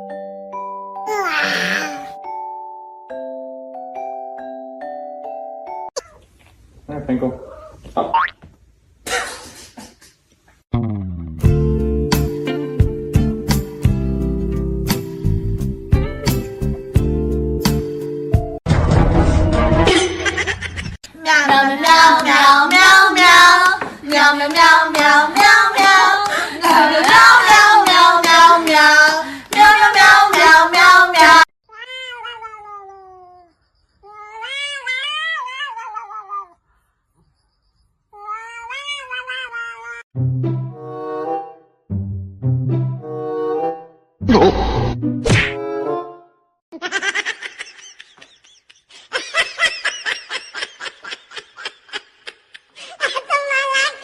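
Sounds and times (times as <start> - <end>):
person laughing: 19.8 - 21.0, 44.2 - 44.8, 46.7 - 53.4
cat meowing: 31.7 - 36.6, 38.1 - 40.0
cat yowling: 31.7 - 36.6, 38.2 - 40.0.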